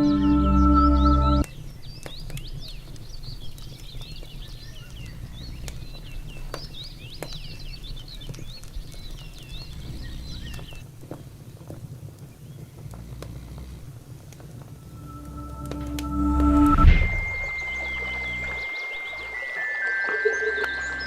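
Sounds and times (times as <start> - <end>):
small birds chirping: 0.0 - 15.4, 17.2 - 21.0
steady low rumble: 14.6 - 18.7.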